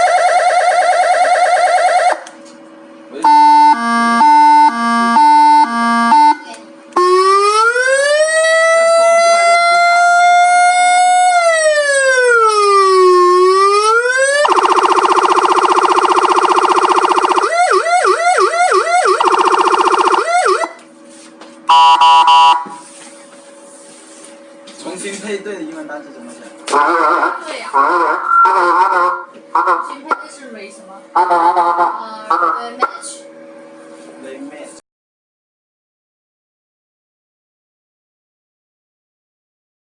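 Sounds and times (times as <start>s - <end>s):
electronic vehicle siren: 0.0s - 2.2s, 3.2s - 20.8s, 21.7s - 22.8s, 26.8s - 30.3s, 31.2s - 33.0s.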